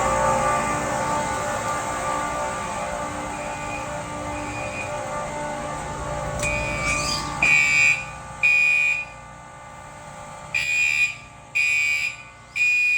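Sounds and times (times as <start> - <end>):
high-pitched alarm beeps: 3.4 - 5.0, 6.4 - 9.2, 10.6 - 12.9.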